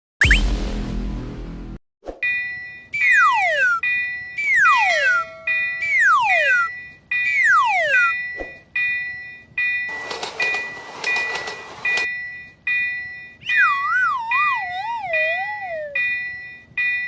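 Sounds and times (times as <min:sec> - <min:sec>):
descending cartoon whistle: 0:03.0 - 0:06.7, 0:13.4 - 0:16.0
rushing train noise: 0:09.9 - 0:12.1.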